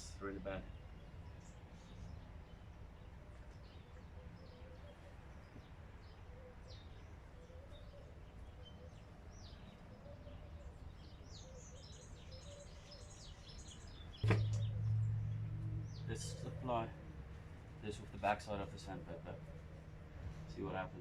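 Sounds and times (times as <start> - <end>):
bird chirps: 0.0 - 21.0
low background rumble: 13.1 - 21.0.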